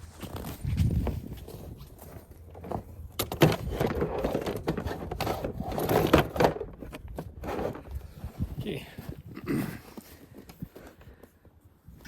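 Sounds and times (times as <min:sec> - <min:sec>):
plastic cases knocking and rattling: 0:01.5 - 0:08.0.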